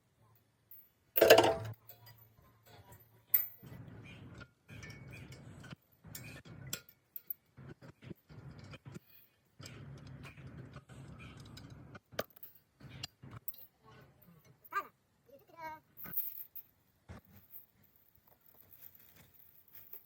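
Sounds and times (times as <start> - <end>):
faint rattling and scraping: 0.4 - 14.9, 15.9 - 20.0
metal tools clanking: 1.2 - 3.6.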